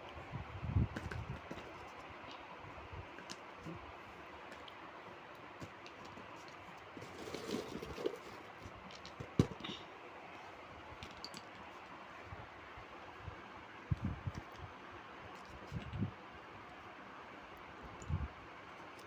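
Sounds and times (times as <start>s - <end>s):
items rustling: 3.1s - 9.8s.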